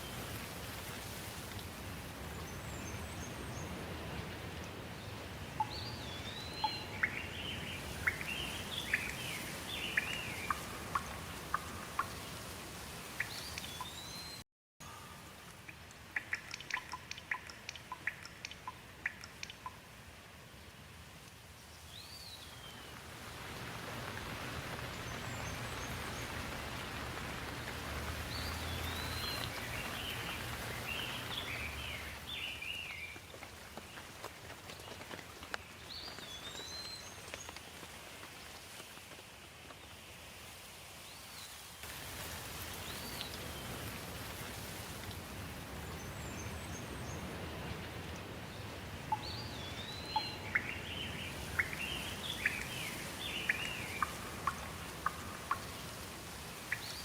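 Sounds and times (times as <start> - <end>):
steady rain falling: 0.0 - 57.0
bird chirping: 5.6 - 12.1, 28.3 - 33.2, 49.1 - 55.8
sharp ticks: 15.5 - 19.8.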